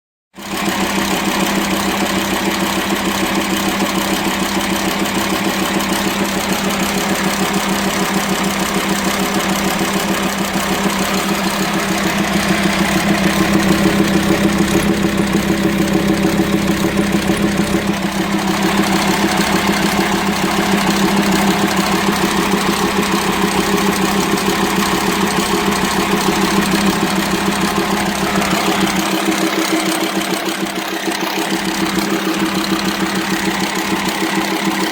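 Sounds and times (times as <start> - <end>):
diesel engine idling: 0.4 - 34.9.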